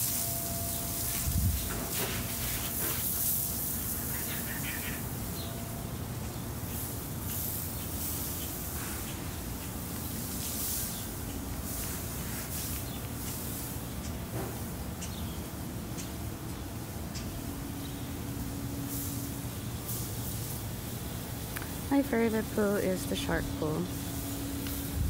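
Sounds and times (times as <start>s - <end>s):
steady outdoor hiss: 0.0s - 25.0s.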